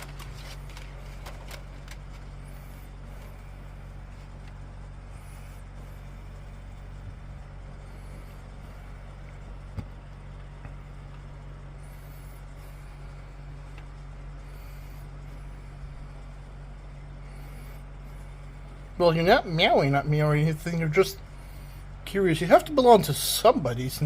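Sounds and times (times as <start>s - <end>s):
low hum: 0.0s - 24.0s.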